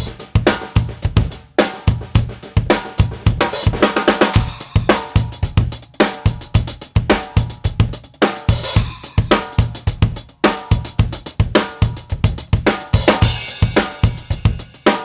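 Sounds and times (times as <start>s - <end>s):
kick drum: 0.0s - 3.8s, 4.4s - 8.0s, 8.8s - 14.7s.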